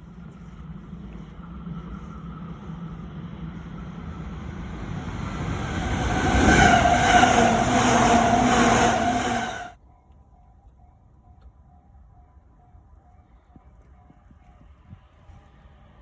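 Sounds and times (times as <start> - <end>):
electric train rumble and whine: 0.0 - 9.8.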